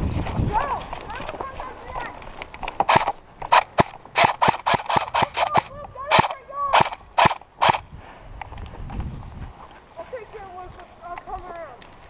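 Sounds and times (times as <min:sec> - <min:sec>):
airsoft guns firing: 0:02.8 - 0:07.8.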